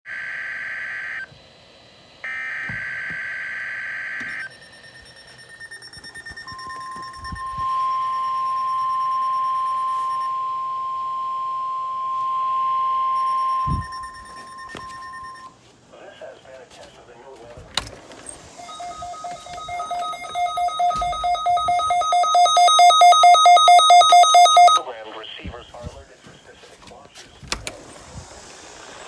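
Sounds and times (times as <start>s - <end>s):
steady weather alert tone: 2.2s - 15.5s, 17.5s - 26.6s.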